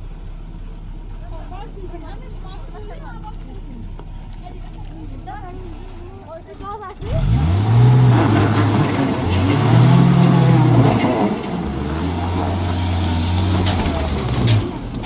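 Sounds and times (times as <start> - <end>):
car engine revving: 1.3 - 15.0.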